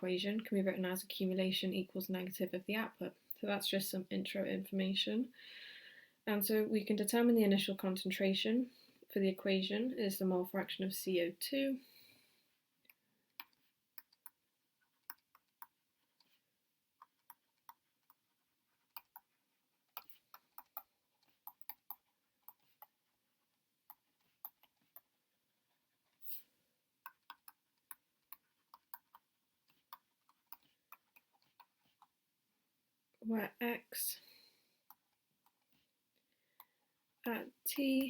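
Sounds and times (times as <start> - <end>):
writing clicks and taps: 12.8 - 26.2, 27.0 - 32.2, 34.8 - 35.9, 36.5 - 36.9.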